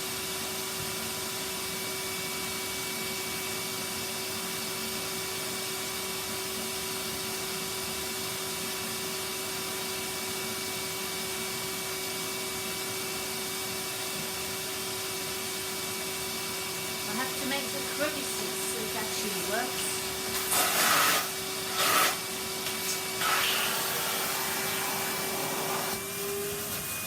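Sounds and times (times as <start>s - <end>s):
vacuum cleaner running: 0.0s - 27.0s.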